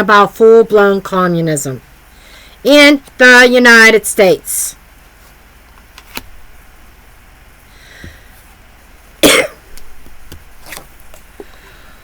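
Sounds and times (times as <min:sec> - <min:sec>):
person coughing: 0:09.2 - 0:09.7.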